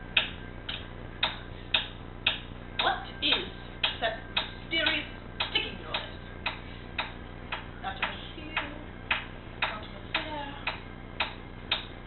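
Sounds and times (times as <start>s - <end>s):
steady ticking: 0.1s - 12.0s.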